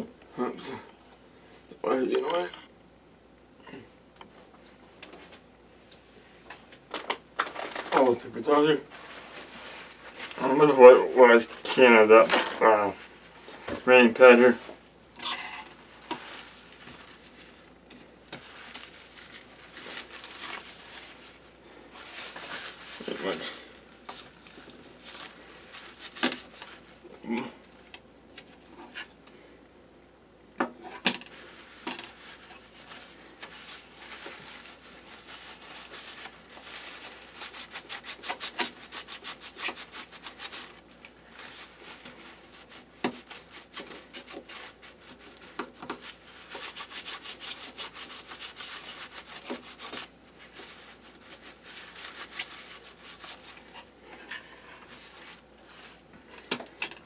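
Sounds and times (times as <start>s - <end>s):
paper towel rubbing: 8.5s - 14.8s, 15.7s - 27.0s, 31.3s - 56.1s.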